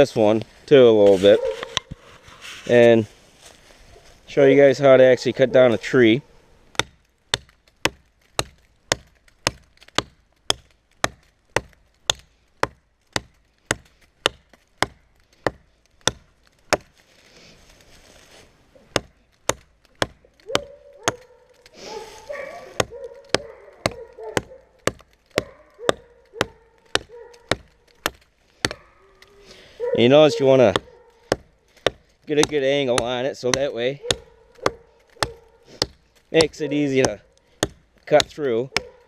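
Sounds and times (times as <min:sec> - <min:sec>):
hatchet chopping tree trunk: 0:06.7 - 0:17.0, 0:18.8 - 0:29.3, 0:29.9 - 0:39.0.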